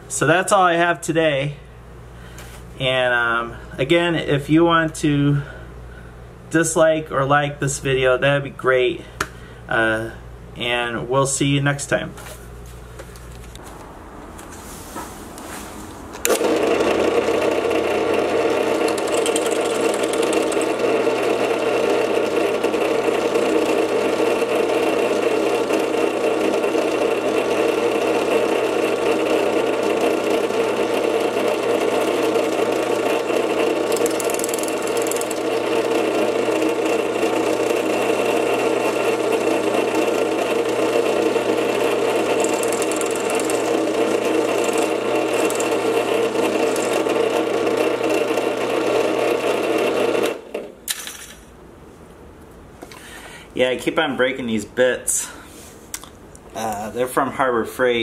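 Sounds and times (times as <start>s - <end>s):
drill press drilling metal: 16.2s - 51.2s.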